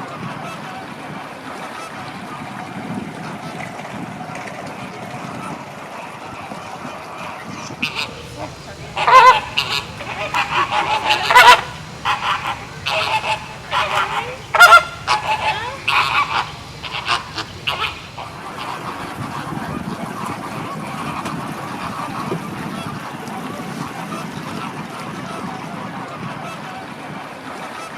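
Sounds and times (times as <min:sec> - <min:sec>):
flamingos honking: 0:07.7 - 0:25.4
background hiss: 0:07.8 - 0:20.0.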